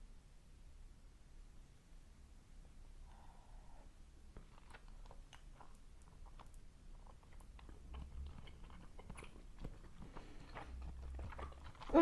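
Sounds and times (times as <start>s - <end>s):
person chewing food: 4.2s - 12.0s.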